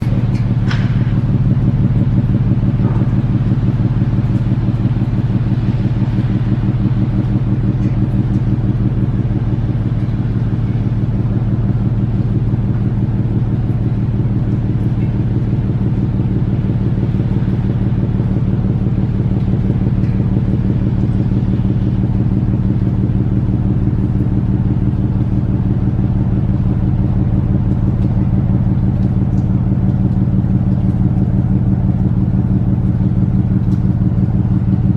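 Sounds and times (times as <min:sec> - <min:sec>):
ship engines droning: 0:00.0 - 0:34.9.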